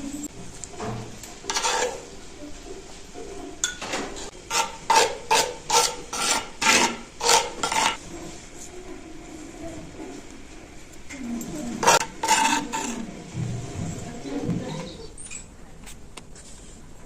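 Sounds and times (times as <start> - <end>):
spoon scraping in cooking pot: 1.1 - 2.1, 3.6 - 8.1, 11.7 - 13.2.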